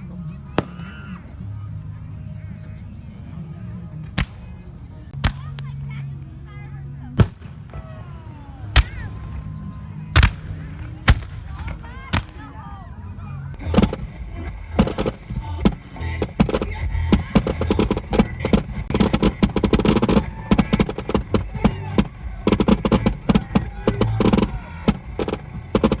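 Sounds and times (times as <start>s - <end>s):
fireworks bangs and crackles: 13.6s - 26.0s.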